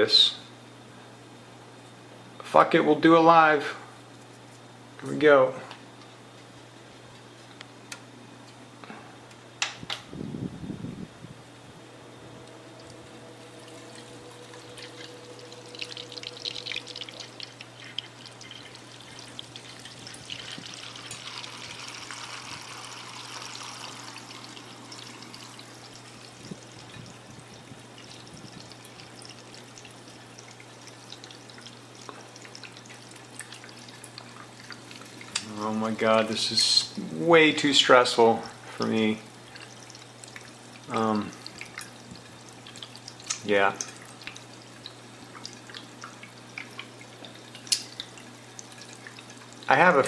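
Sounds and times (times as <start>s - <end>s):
pump humming: 8.9s - 50.0s
liquid pouring and trickling: 12.2s - 36.3s, 39.3s - 50.0s.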